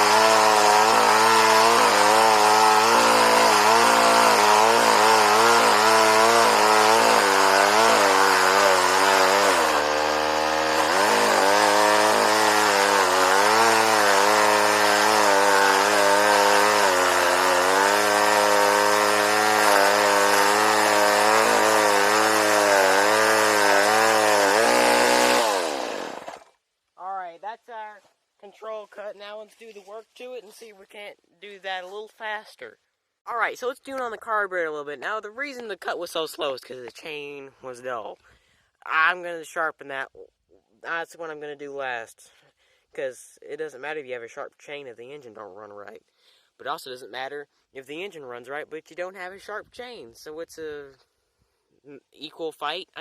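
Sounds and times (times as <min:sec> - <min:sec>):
chainsaw cutting wood: 0:00.0 - 0:26.6.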